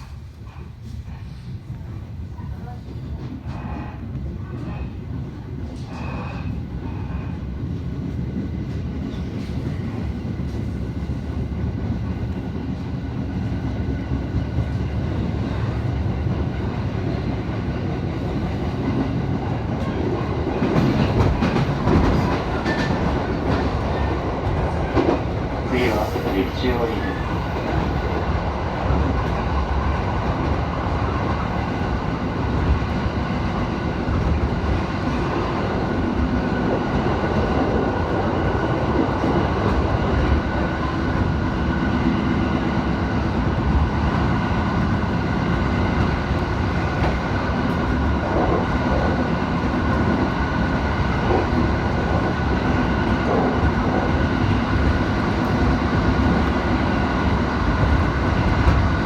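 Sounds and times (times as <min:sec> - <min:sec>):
train wheels rumbling on rail: 0:00.0 - 0:59.0.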